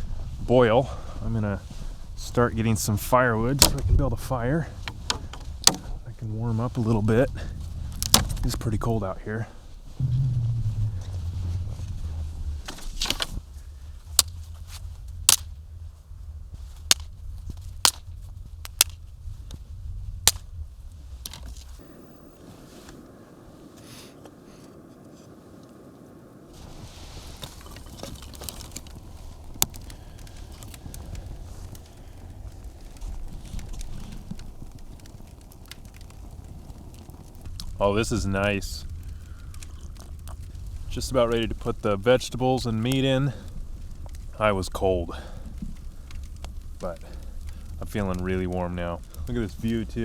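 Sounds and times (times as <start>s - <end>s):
small crackles: 0.0s - 50.0s
loud pop: 10.0s - 13.4s
sticks snapping: 14.1s - 15.6s, 16.8s - 19.0s, 20.3s - 20.5s.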